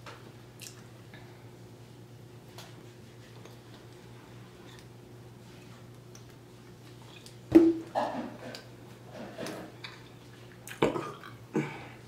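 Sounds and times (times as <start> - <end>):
mouth and eating noises: 0.5 - 0.9, 9.4 - 11.4
woman burping: 10.8 - 11.8.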